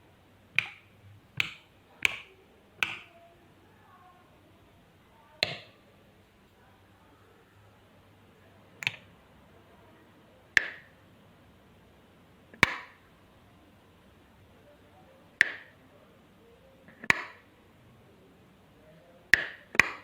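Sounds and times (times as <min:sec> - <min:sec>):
sharp single clicks: 0:08.8 - 0:09.1.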